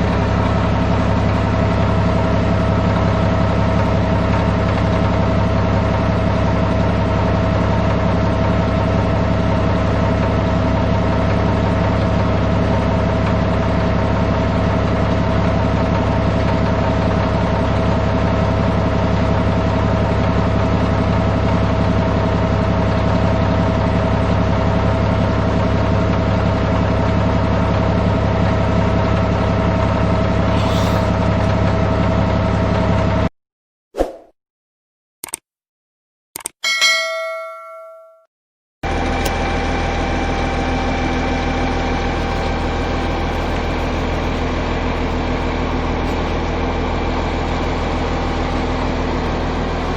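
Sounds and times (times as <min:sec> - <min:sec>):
bulldozer diesel engine running: 0:00.0 - 0:33.3, 0:38.8 - 0:49.9
constant whine: 0:38.9 - 0:49.9.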